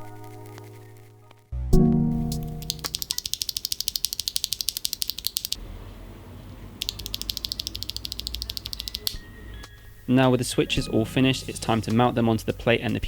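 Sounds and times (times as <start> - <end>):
rapid mechanical clicking: 2.6 - 5.6, 6.8 - 9.2.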